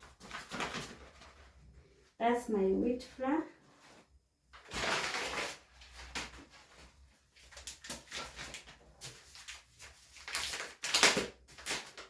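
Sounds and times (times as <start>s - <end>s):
flour packet rustling: 3.6s - 12.0s.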